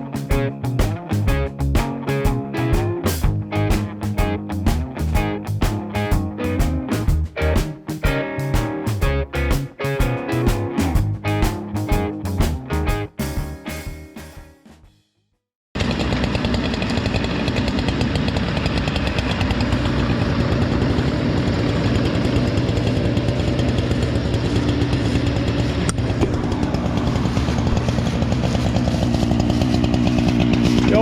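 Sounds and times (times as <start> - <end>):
chainsaw running at high revs: 15.8 - 31.0.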